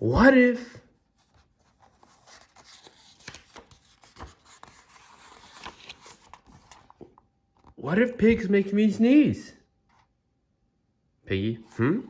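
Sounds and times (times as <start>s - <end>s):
paper pages rustling: 1.1s - 7.8s.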